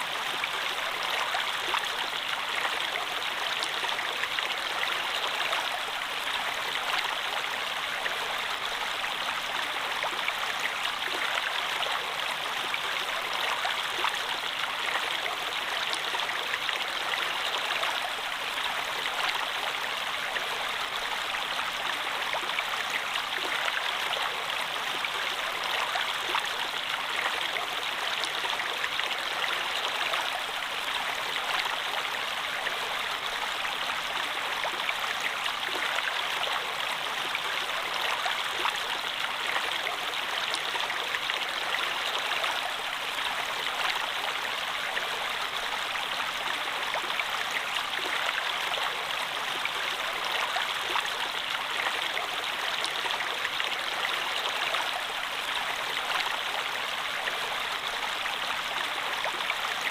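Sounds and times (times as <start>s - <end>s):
stream water rushing: 0.0s - 59.9s.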